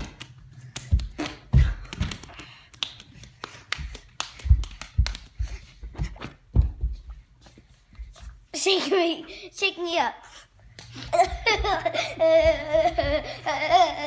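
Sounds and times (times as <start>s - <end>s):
sharp taps with low thumps: 3.8s - 7.1s.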